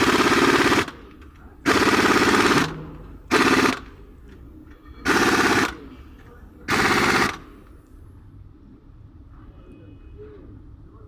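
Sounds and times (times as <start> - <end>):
pneumatic impact wrench hammering: 1.6 - 3.9, 5.0 - 5.8, 6.7 - 7.4.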